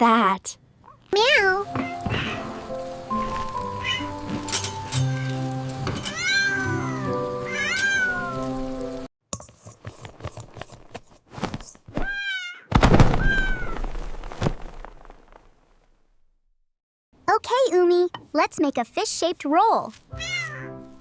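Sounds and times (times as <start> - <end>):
cat meowing: 1.2 - 2.6, 3.8 - 4.2, 6.1 - 8.5, 12.0 - 13.8, 20.2 - 20.7
light background music: 1.6 - 9.1, 20.0 - 21.0
loud thud: 12.7 - 15.6.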